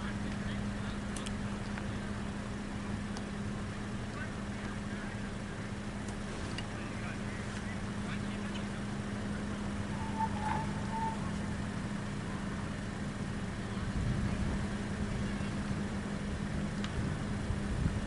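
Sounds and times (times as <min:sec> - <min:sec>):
diesel locomotive rumbling: 0:00.0 - 0:18.0
short high tones: 0:09.8 - 0:11.4.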